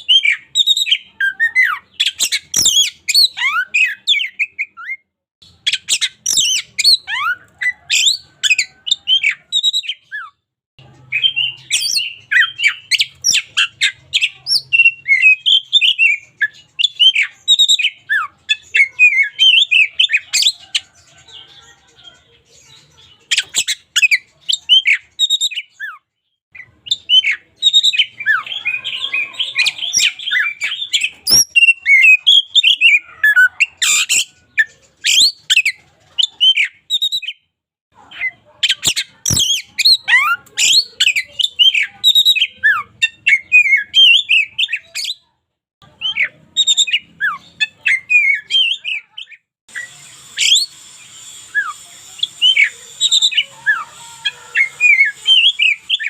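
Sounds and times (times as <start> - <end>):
bird singing: 0.0 - 37.4, 38.6 - 45.2.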